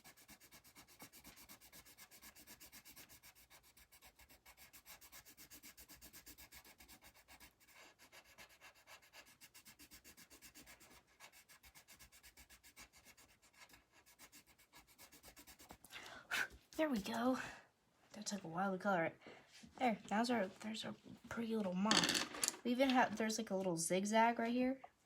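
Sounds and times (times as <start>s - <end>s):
colored pencil scribbling on paper: 0.0s - 15.8s.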